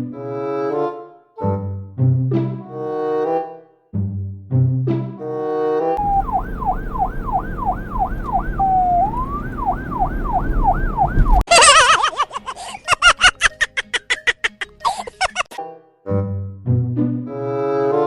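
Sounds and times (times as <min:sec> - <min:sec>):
electronic siren yelping: 0:06.0 - 0:11.4.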